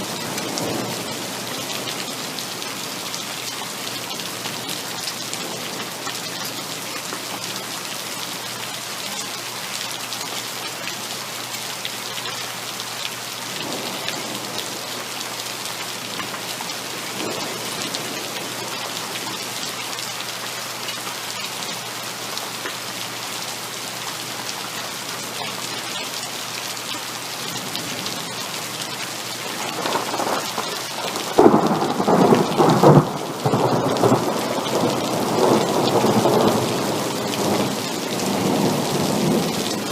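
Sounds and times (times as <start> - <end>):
heavy rain: 0.0 - 39.9
thunder rumbling and crackling: 29.6 - 39.9.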